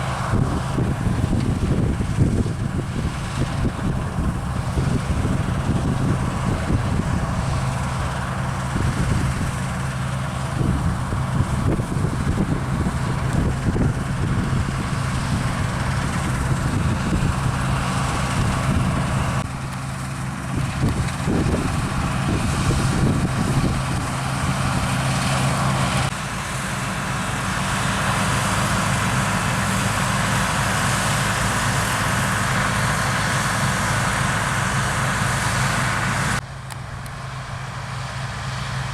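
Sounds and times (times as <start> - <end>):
diesel engines running: 0.0 - 38.9.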